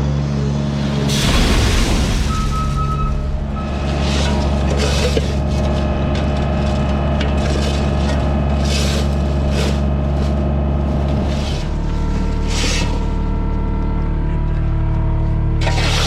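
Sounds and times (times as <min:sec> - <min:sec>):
tractor engine running: 0:00.0 - 0:16.0.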